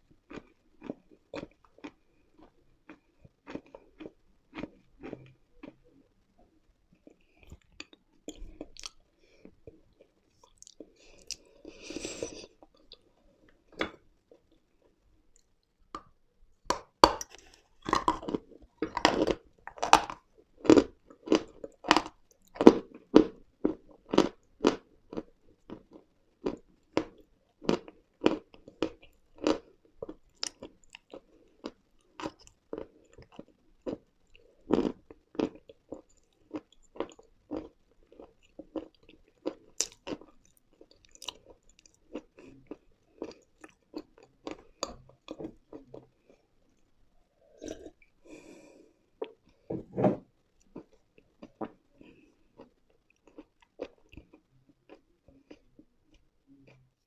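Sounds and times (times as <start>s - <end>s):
chewing crunchy chalky pieces: 0.2s - 5.8s, 16.8s - 46.5s, 50.6s - 56.8s.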